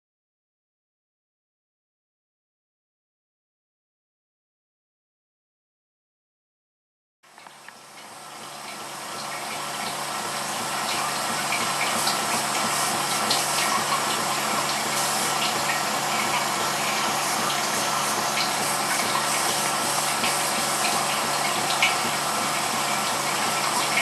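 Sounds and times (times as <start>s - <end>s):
low unit hum: 7.3s - 24.0s
toilet water spray: 7.4s - 24.0s.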